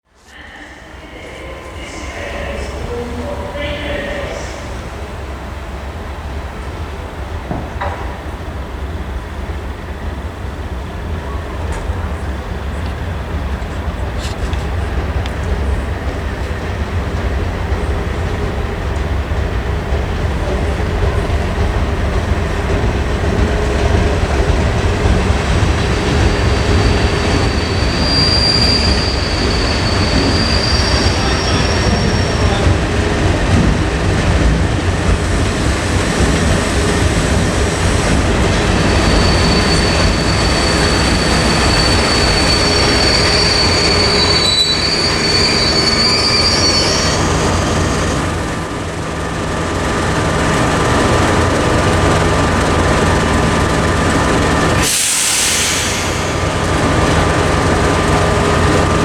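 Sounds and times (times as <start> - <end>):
diesel locomotive engine rumble: 0.0 - 59.0
high-pitched wheel squeal: 26.0 - 32.8, 38.5 - 48.2.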